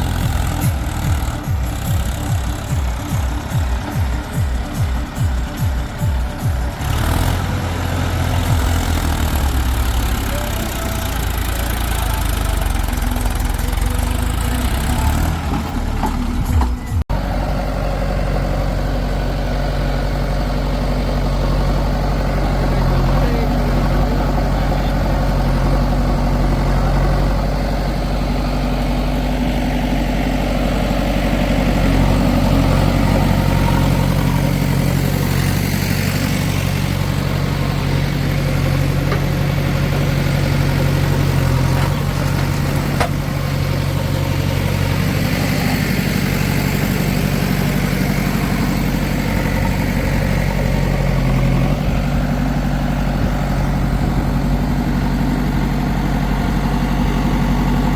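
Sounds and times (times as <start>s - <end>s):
diesel engine running: 0.0s - 57.9s.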